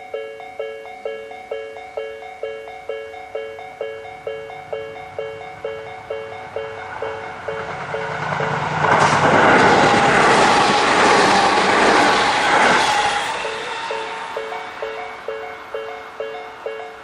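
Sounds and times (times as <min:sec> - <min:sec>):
crossing warning bell ringing: 0:00.0 - 0:17.0
train wheels on rails: 0:03.6 - 0:17.0.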